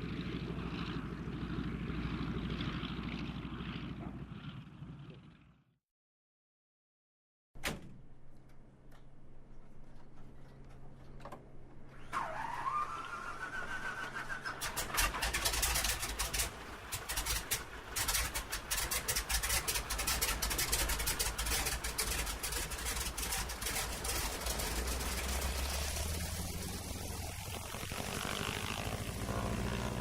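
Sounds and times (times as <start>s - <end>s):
engine running with uneven pops: 8.3s - 12.5s, 14.6s - 30.0s.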